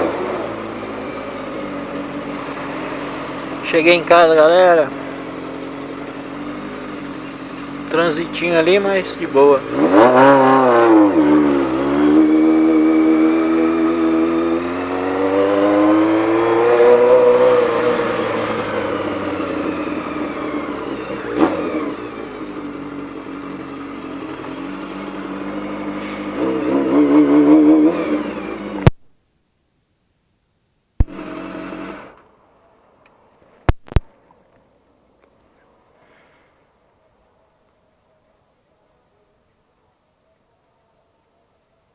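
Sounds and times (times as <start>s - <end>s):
motorcycle engine revving: 0.0s - 29.0s, 31.0s - 32.2s
sharp clicks: 33.0s - 34.1s.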